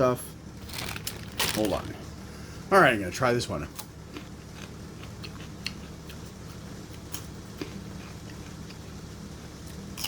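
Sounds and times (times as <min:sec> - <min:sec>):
steady low hum: 0:00.0 - 0:10.0
person chewing raw bean: 0:03.8 - 0:09.0.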